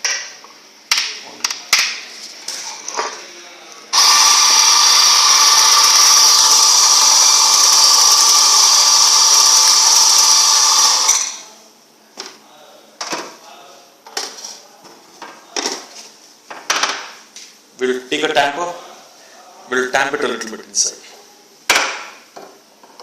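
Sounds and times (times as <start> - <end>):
coffee grinder grinding beans: 4.0 - 11.4.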